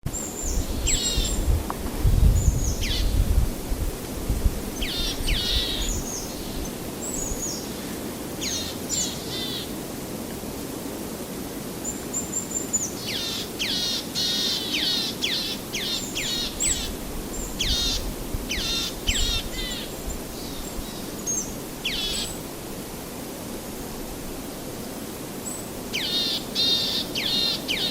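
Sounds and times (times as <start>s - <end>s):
small birds chirping: 2.4s - 3.3s, 4.8s - 9.7s, 11.9s - 22.5s, 25.4s - 27.9s.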